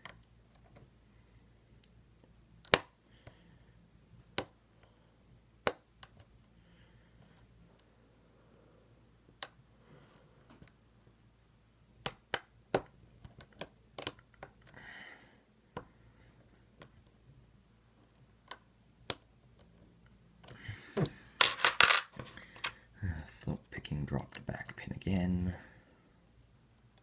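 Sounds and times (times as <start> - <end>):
metal clatter: 21.4 - 22.4
lock picks clicking in lock: 21.4 - 22.7.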